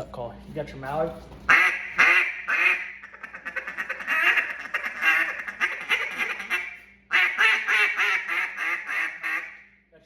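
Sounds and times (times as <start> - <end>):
duck call quacking: 1.5 - 9.7.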